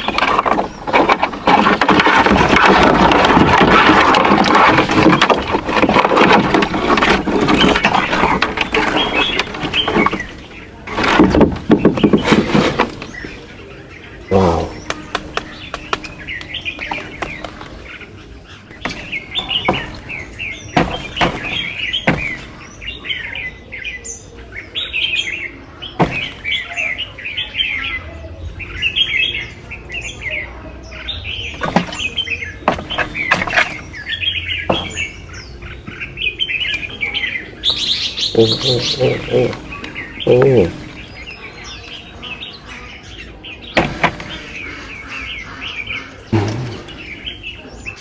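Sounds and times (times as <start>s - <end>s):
birds chirping: 0.0s - 48.0s
sharp knocks: 18.8s - 22.7s, 26.0s - 26.5s, 31.6s - 34.0s, 34.6s - 36.0s, 43.8s - 44.6s, 46.3s - 47.1s.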